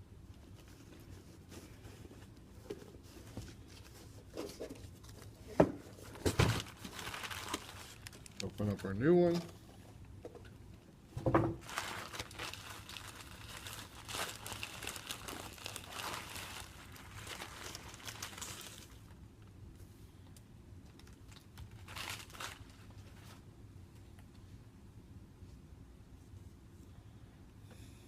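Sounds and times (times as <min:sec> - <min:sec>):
plastic packaging crinkling: 0:06.0 - 0:09.4, 0:11.6 - 0:19.5, 0:20.9 - 0:23.4.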